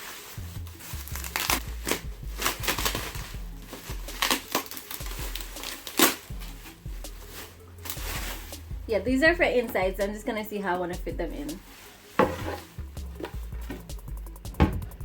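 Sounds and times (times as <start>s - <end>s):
packaging crinkling and rustling: 0.0s - 8.7s
background music: 0.0s - 15.0s.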